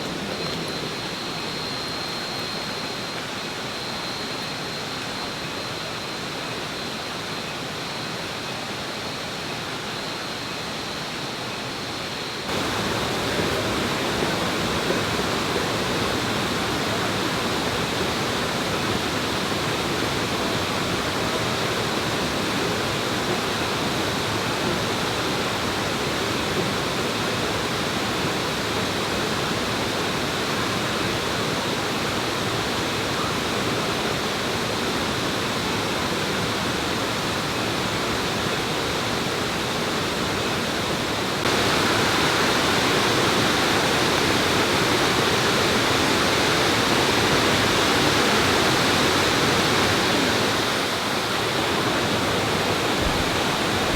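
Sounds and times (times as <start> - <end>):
waterfall rushing: 12.5 - 53.9.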